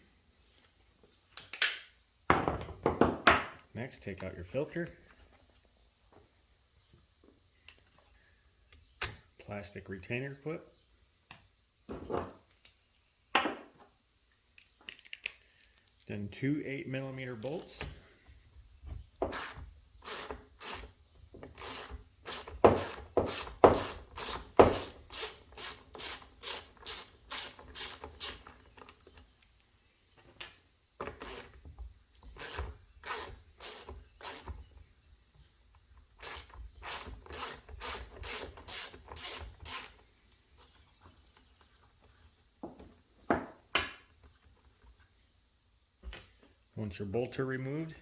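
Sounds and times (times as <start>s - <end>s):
socket ratchet clicking: 19.3s - 28.6s, 31.0s - 31.6s, 32.3s - 34.6s, 36.2s - 40.0s.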